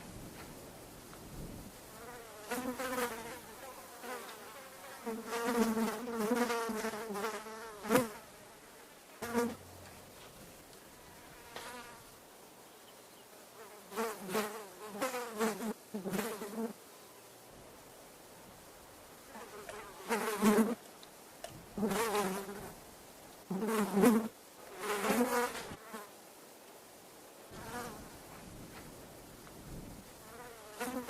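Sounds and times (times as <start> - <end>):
flies buzzing in flight: 1.9 - 12.2, 13.2 - 17.2, 19.2 - 20.8, 21.6 - 22.8, 23.4 - 26.2, 30.1 - 31.0.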